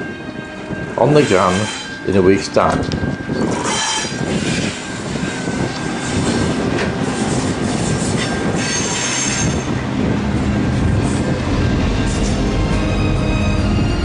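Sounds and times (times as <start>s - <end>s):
train rumbling and clattering: 0.0s - 14.0s
train wheels squealing: 1.0s - 9.9s.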